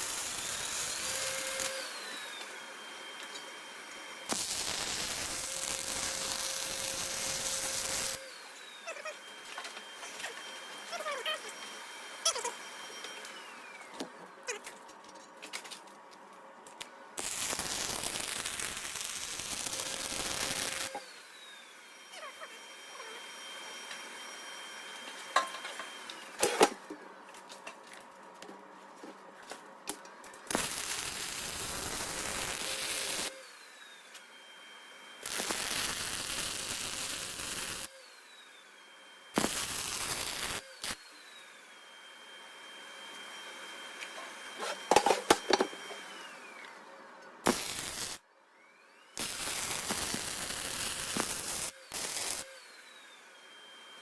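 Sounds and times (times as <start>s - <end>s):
metalworking tool hissing bursts: 17.2s - 20.9s, 47.5s - 48.2s, 49.2s - 52.5s.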